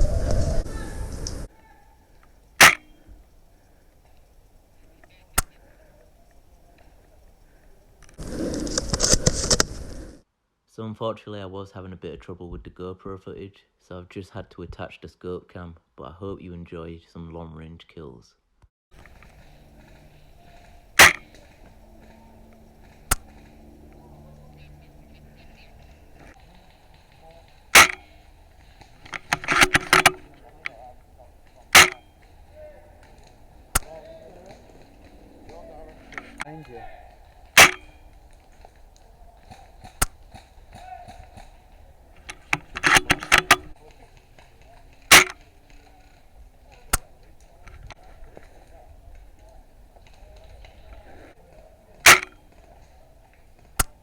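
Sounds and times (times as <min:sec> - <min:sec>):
airsoft rifle shots: 0:02.6 - 0:03.2, 0:19.0 - 0:48.8, 0:52.0 - 0:53.0.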